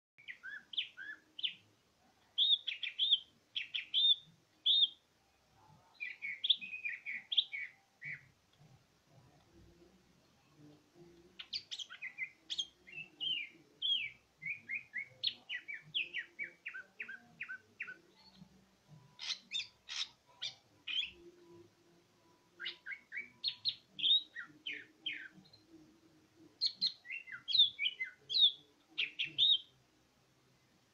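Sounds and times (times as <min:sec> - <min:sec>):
bird singing whistled notes: 0:00.2 - 0:01.6, 0:02.4 - 0:05.0, 0:06.0 - 0:08.3, 0:11.4 - 0:25.8, 0:26.6 - 0:29.8.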